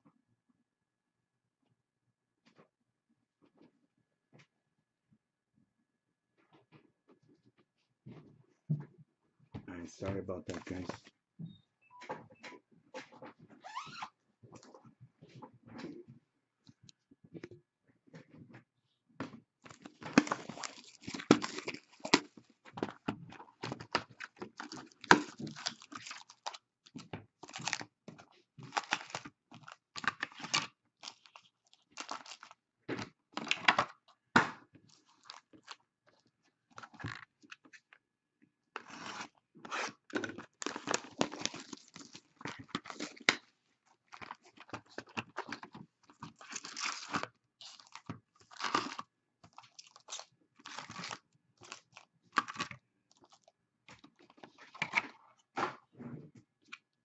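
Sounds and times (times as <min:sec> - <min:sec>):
plastic wrapping crinkling: 0:19.7 - 0:27.9, 0:28.6 - 0:32.6, 0:38.8 - 0:55.1.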